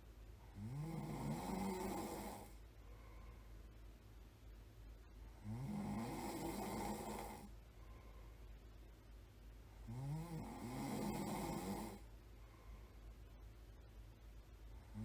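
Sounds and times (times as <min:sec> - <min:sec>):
person snoring: 0:00.5 - 0:02.6, 0:05.4 - 0:07.5, 0:09.8 - 0:12.0.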